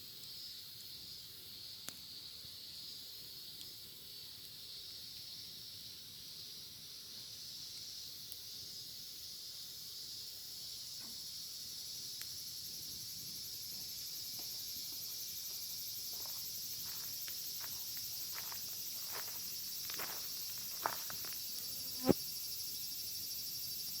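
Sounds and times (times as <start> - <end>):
cicadas droning: 0.0 - 24.0.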